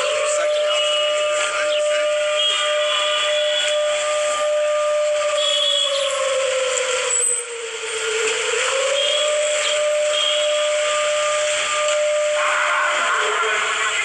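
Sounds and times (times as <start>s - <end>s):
wailing alert siren: 0.0s - 14.0s
static hiss: 7.7s - 14.0s.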